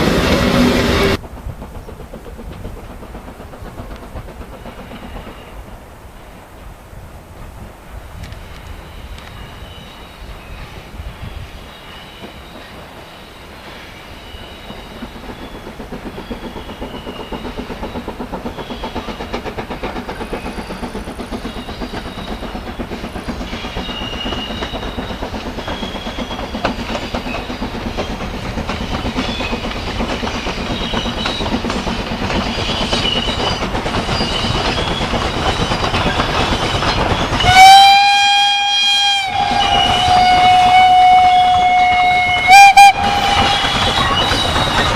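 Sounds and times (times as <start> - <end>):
steam train running: 0.0 - 44.9
steam whistle: 37.4 - 44.9.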